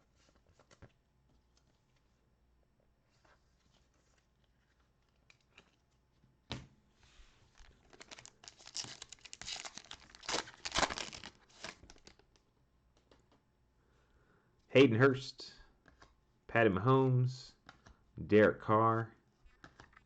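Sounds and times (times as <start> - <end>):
wrapper tearing and crinkling: 7.7 - 12.2.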